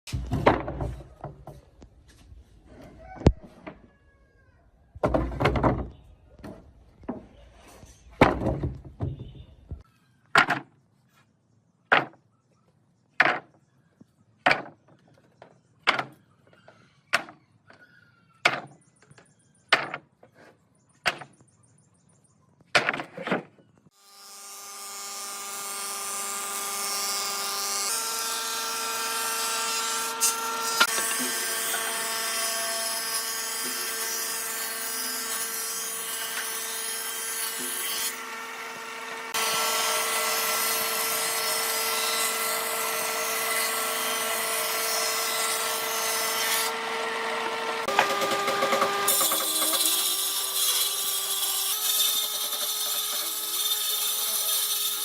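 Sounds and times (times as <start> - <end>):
electric power tool whine: 36.3 - 55.0.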